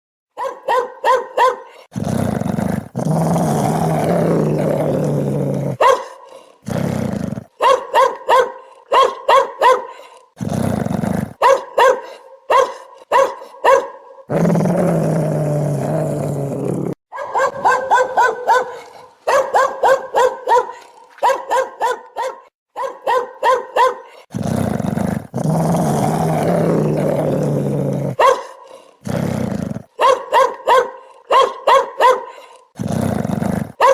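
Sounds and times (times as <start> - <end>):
dog barking: 0.3 - 1.9, 5.7 - 6.5, 7.5 - 10.2, 11.4 - 14.3, 17.1 - 24.3, 28.1 - 28.9, 29.9 - 32.7
dog growling: 1.8 - 7.5, 10.0 - 11.4, 14.3 - 19.2, 24.2 - 29.9, 32.3 - 33.9.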